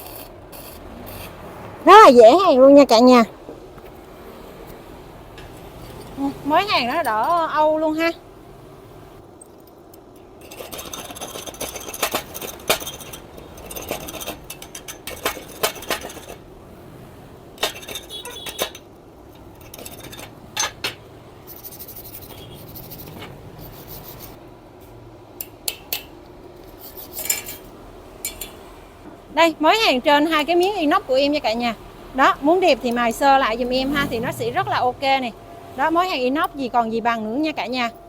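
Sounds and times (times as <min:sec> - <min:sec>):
metal clinking and scraping: 0:00.0 - 0:01.5, 0:05.4 - 0:07.9, 0:09.2 - 0:24.4, 0:26.6 - 0:28.7.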